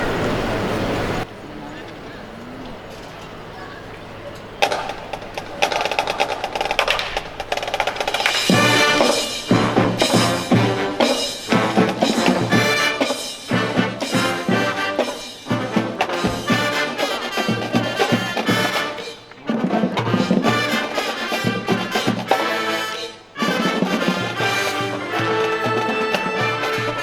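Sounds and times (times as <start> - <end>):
marching band playing brass music: 4.6 - 27.0.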